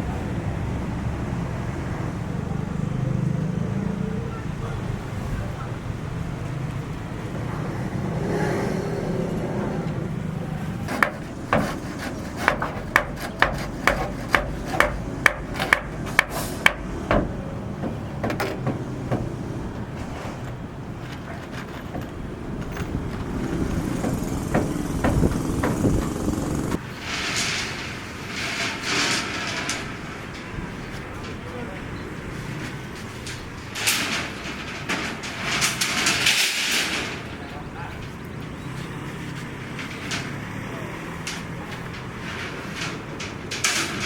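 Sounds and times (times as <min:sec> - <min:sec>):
hammer blows: 0:10.8 - 0:20.2, 0:22.7 - 0:27.9
steady low rumble: 0:22.1 - 0:26.8.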